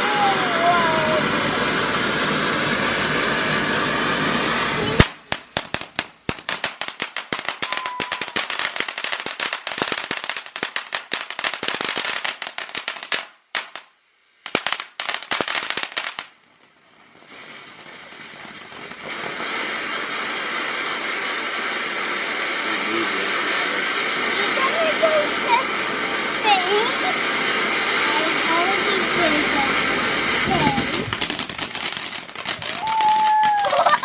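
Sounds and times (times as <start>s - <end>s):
fireworks crackling: 0.0s - 34.0s
steady hiss: 12.3s - 34.0s.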